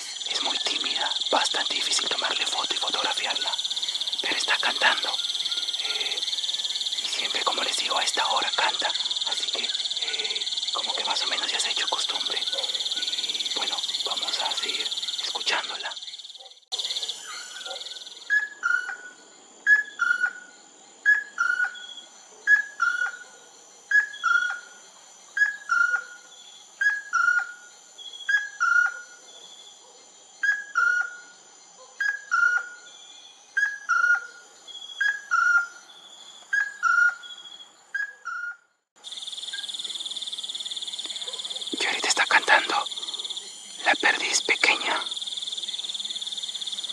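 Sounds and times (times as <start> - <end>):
loud insect hiss: 0.0 - 18.4, 21.7 - 30.5, 39.0 - 46.9
insects buzzing: 0.0 - 19.8, 20.5 - 38.1, 39.0 - 46.9.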